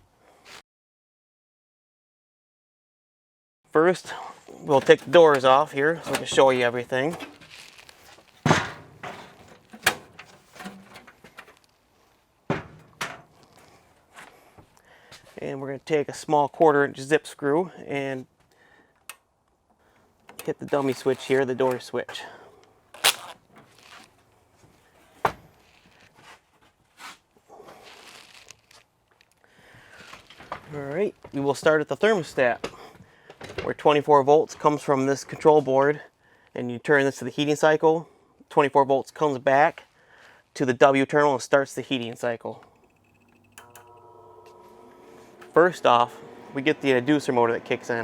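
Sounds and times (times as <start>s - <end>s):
rustling: 4.5s - 15.4s, 19.8s - 22.0s, 22.9s - 30.8s
sheet-metal knocks and clunks: 8.4s - 11.6s, 12.5s - 13.4s.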